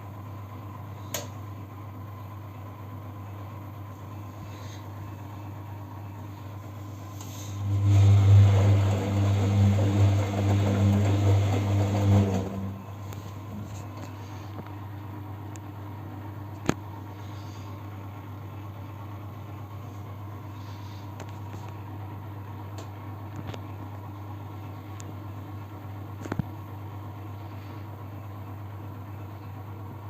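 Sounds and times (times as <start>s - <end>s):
steady low hum: 0.0s - 30.0s
washing machine drum turning: 7.6s - 13.6s.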